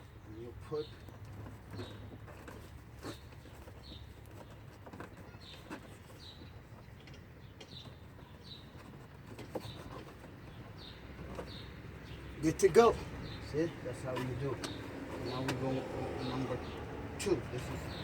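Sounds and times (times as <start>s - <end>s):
light handling knocks: 14.0s - 15.7s.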